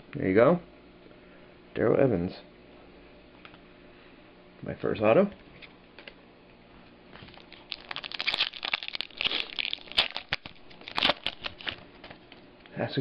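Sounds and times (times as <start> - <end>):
foil wrapper crinkling and tearing: 7.2 - 12.4.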